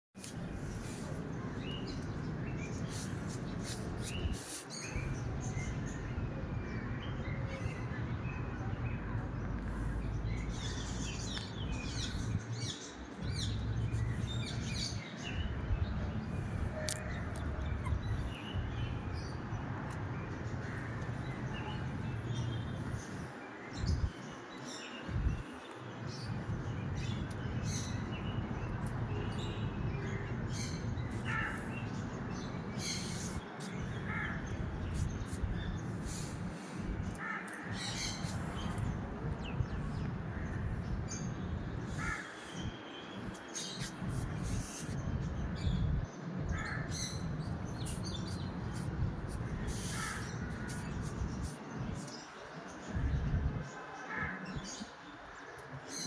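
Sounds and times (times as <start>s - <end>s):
birds calling: 16.3s - 45.8s, 46.5s - 52.9s.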